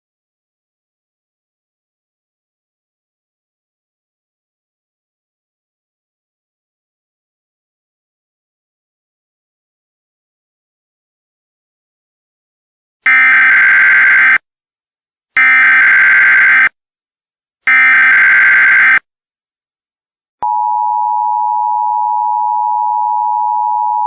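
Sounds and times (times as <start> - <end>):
two-tone attention signal: 20.4 - 24.0.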